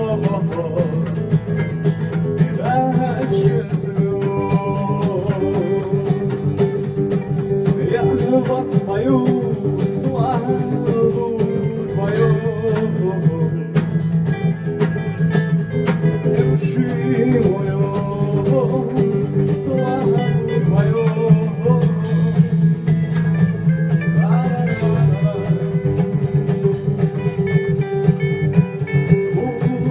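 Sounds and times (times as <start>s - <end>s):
person singing: 0.0s - 1.6s, 2.4s - 13.8s, 16.4s - 22.6s, 24.1s - 26.4s, 28.2s - 29.9s
guitar: 0.0s - 29.9s.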